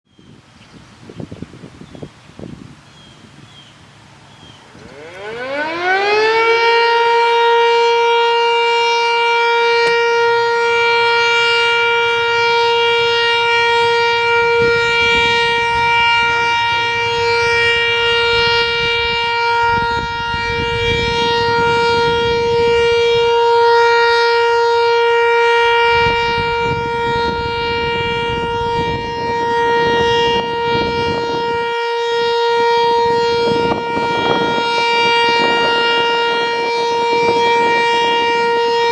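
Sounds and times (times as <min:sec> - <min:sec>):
warning siren winding up: 0:04.2 - 0:38.9.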